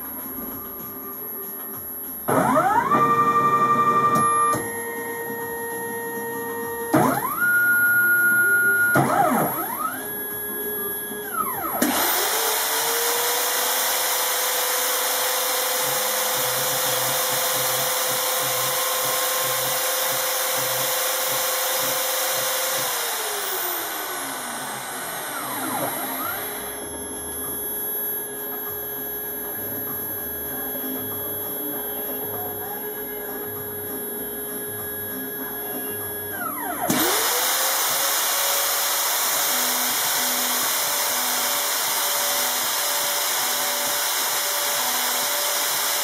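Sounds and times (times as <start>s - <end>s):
machine spindle motor whining: 0.0s - 46.0s.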